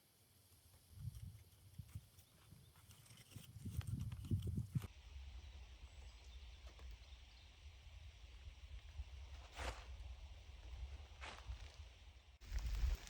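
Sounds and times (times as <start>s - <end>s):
steady low rumble: 12.3s - 13.0s.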